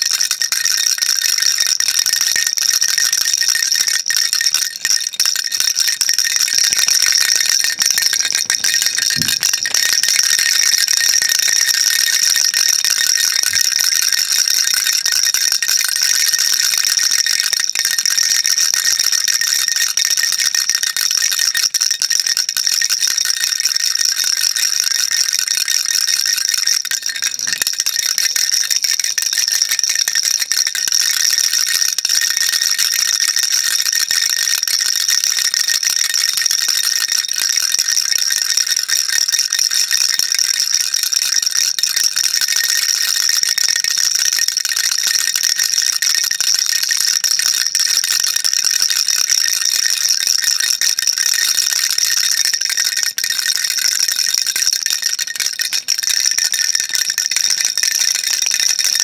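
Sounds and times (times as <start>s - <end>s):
baby rattle shaken: 0.0s - 33.4s, 54.8s - 56.2s.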